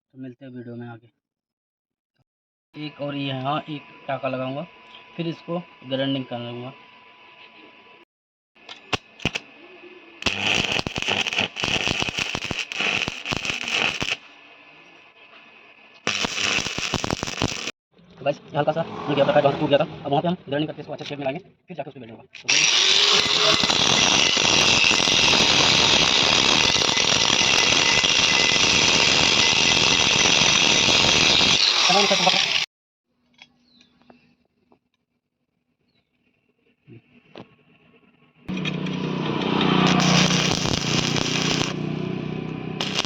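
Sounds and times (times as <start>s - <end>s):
welding electrode snaps: 8.6s - 9.5s, 10.2s - 14.3s, 16.0s - 17.7s, 22.5s - 32.6s, 39.8s - 41.8s, 42.8s - 43.0s
angle grinder grinding steel: 8.7s - 9.5s, 10.2s - 14.3s, 16.0s - 17.7s, 22.5s - 32.7s, 38.5s - 43.0s
welding arc crackling and sizzling: 8.7s - 9.5s, 10.2s - 14.4s, 16.0s - 17.8s, 22.5s - 32.7s, 39.7s - 42.0s, 42.8s - 43.0s.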